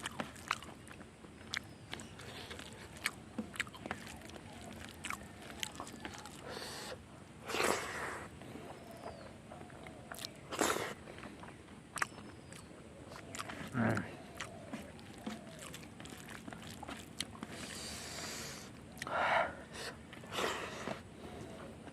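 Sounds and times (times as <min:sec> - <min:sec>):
wet mouth clicks and lip smacks: 0:11.4 - 0:17.8.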